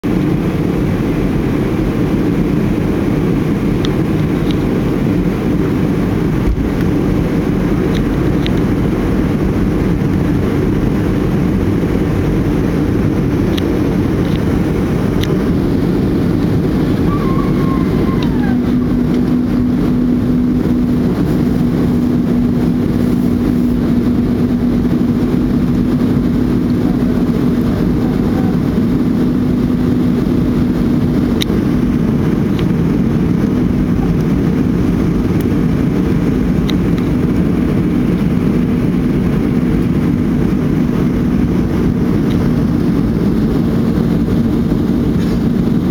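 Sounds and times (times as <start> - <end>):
airliner engine and airflow rumble: 0.0 - 45.9
steady low hum: 0.0 - 45.9.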